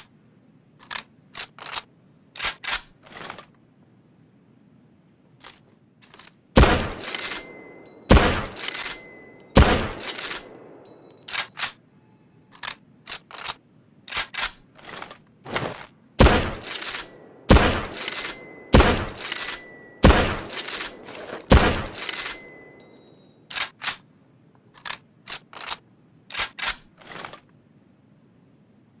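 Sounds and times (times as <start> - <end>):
rifle bolt metallic clicks: 0.8 - 3.6, 5.4 - 11.8, 12.5 - 15.2, 16.2 - 27.5
rifle shots with echo: 6.6 - 11.6, 16.2 - 22.8.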